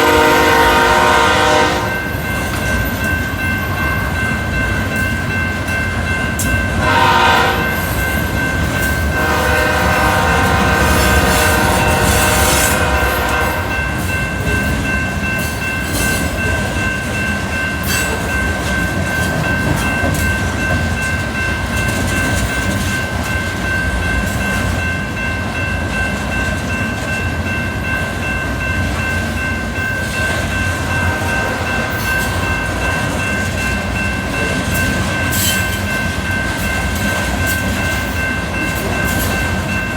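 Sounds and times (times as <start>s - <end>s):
locomotive horn blasts: 0.0s - 2.1s, 6.8s - 7.8s, 9.2s - 13.9s, 30.9s - 33.1s
train rumbling on rails: 0.0s - 39.9s.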